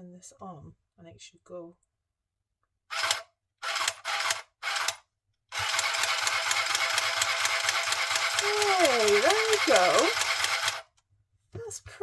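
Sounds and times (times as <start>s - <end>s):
sewing machine clattering: 5.6s - 10.8s.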